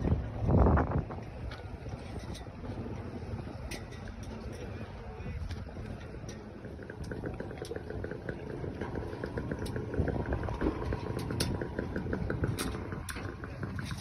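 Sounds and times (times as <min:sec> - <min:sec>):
boat engine ticking: 0:00.0 - 0:14.0.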